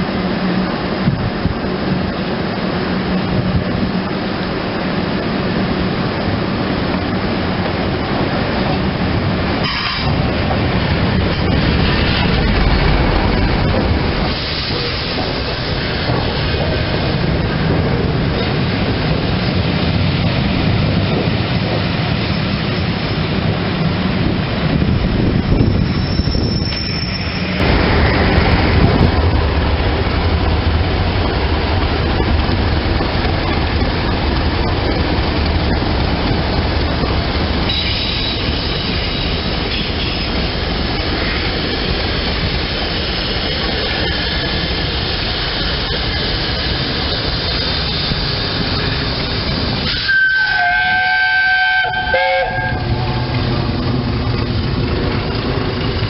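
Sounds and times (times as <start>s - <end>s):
diesel locomotive rumbling: 0.0s - 56.0s
wheel and rail noise: 0.0s - 56.0s
high train horn: 9.6s - 10.2s, 37.7s - 40.3s, 49.8s - 53.3s.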